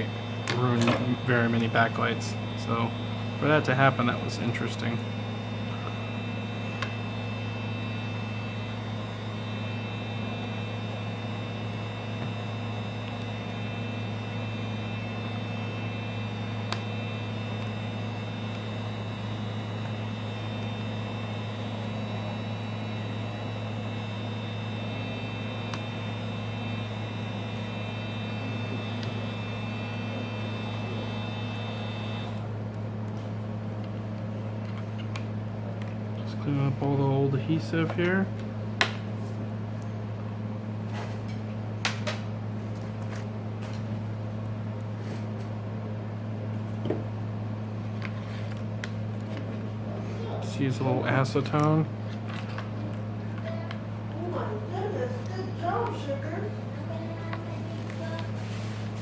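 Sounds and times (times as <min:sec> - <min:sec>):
thin high whine: 0:00.0 - 0:32.6
electrical hum: 0:00.0 - 0:59.0.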